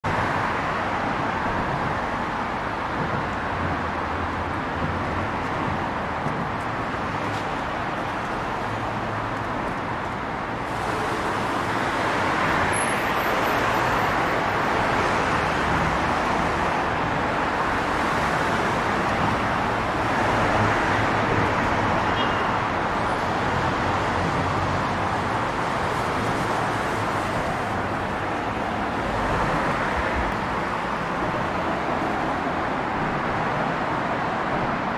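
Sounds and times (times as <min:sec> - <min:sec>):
traffic rushing over a bridge: 0:00.0 - 0:34.9.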